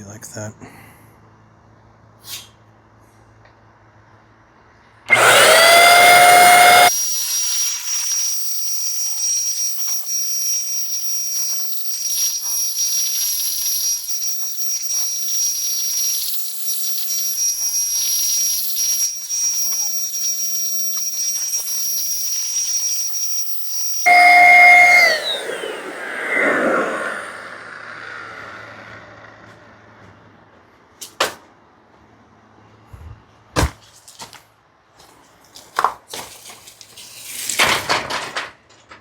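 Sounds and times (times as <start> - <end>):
paint sprayer whine and hiss: 5.1 - 30.2.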